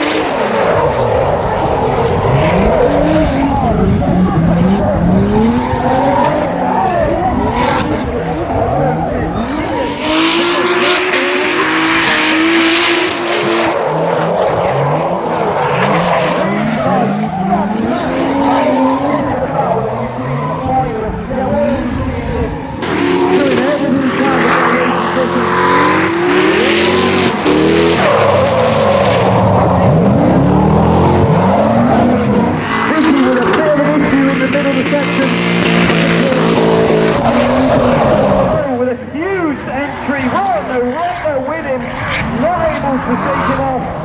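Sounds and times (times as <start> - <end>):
car engine revving: 0.0 - 44.0
tyres screeching: 35.5 - 38.6.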